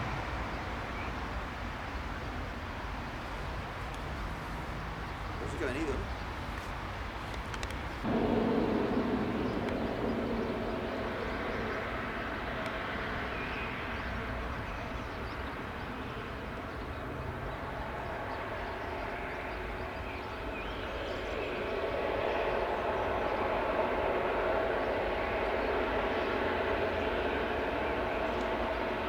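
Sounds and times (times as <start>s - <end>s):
jet engines running: 0.0s - 29.0s
faint hum: 2.3s - 29.0s.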